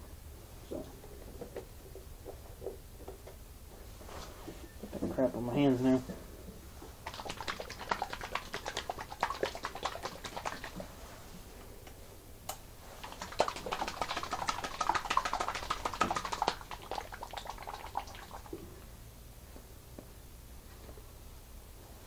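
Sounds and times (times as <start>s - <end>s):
oil glugging out of a bottle: 7.0s - 11.0s, 12.9s - 18.6s.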